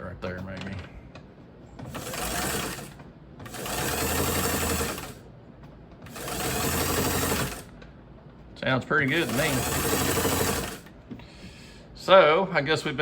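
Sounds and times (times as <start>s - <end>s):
sewing machine running: 1.8s - 5.2s, 6.1s - 7.7s, 9.0s - 10.9s.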